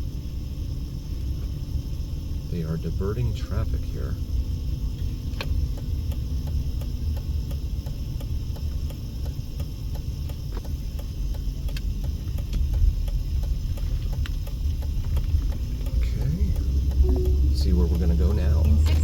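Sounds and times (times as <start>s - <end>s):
car engine rumble: 0.0s - 19.0s
road noise inside car: 0.0s - 19.0s
turn signal ticking: 0.1s - 19.0s.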